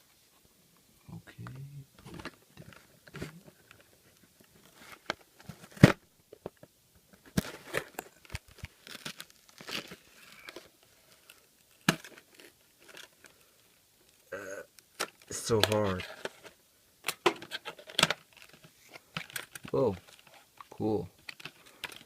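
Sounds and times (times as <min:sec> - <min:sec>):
packaging crinkling and tearing: 0:07.3 - 0:13.4, 0:17.1 - 0:22.0.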